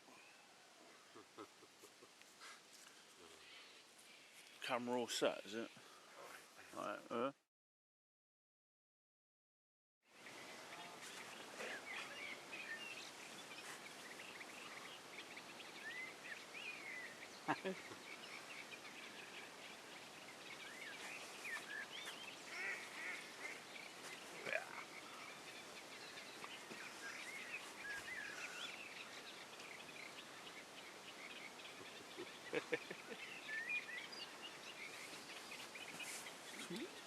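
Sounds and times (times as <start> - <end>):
birds chirping: 0.0 - 7.3, 10.1 - 37.0
louder lower bird calls: 20.8 - 23.6.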